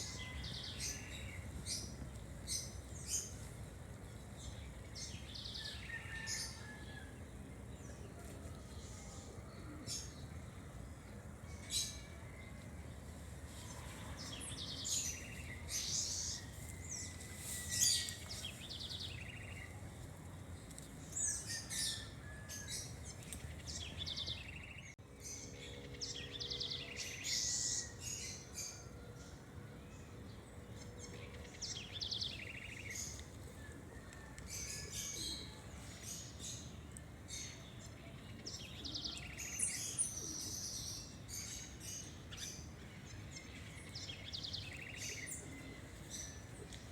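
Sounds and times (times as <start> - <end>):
birds chirping and calling: 13.6 - 19.7, 30.7 - 46.9.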